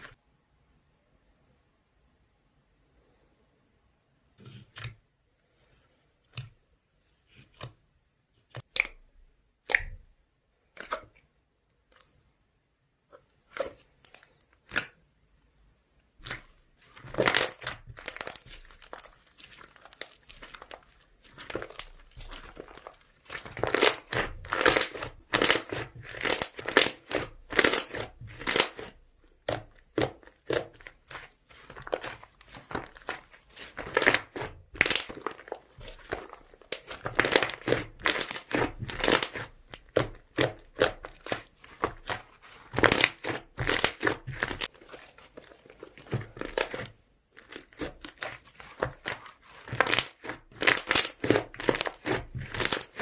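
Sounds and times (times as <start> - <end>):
slime squishing and popping: 8.5 - 11.2, 13.4 - 15.0, 16.2 - 53.0.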